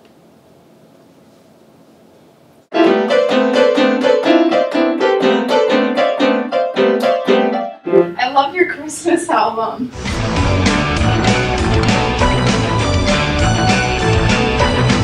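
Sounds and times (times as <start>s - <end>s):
piano music: 2.7s - 8.7s, 10.0s - 15.0s.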